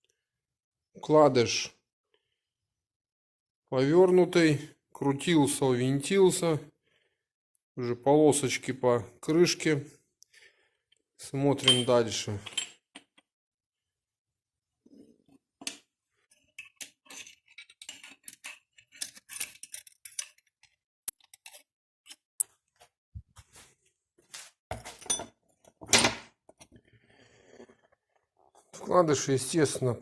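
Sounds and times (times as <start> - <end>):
metal parts clinking: 16.6 - 21.6.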